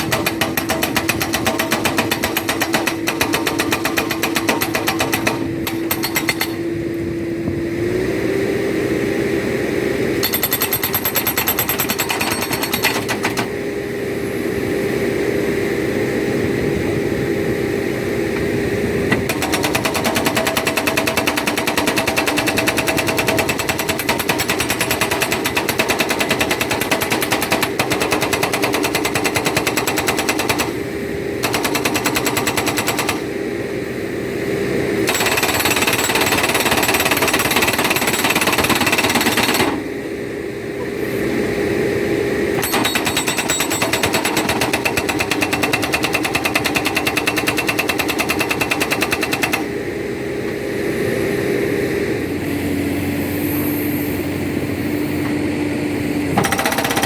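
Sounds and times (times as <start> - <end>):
hydraulic rock breaker hammering: 0.0 - 6.7, 10.2 - 13.6, 19.1 - 33.7, 35.0 - 39.9, 42.5 - 49.8, 56.3 - 57.0
backhoe engine running: 0.0 - 57.0.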